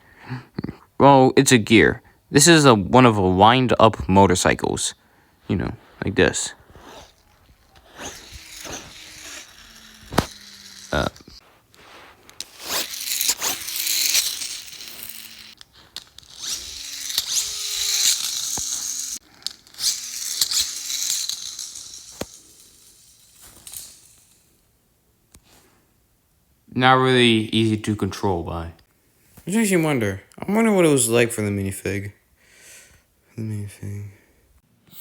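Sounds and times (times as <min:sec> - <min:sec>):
toy motorcycle gears whirring: 0:06.2 - 0:24.6.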